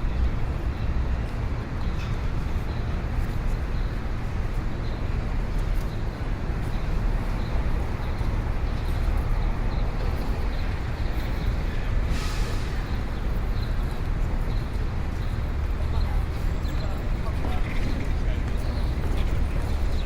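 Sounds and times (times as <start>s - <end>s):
city background din: 0.0s - 20.0s
traffic rumble: 0.0s - 20.0s.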